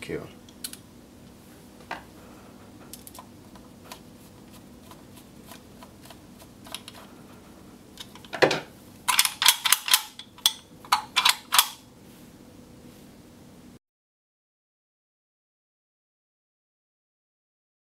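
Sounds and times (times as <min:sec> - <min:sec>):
sharp metal latch clicks: 0:09.1 - 0:11.8.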